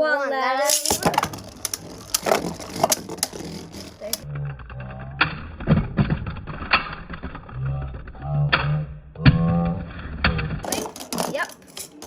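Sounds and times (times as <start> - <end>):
spinning tops clashing: 0.6 - 4.2, 10.6 - 12.0
spinning tops whirring: 0.7 - 4.3.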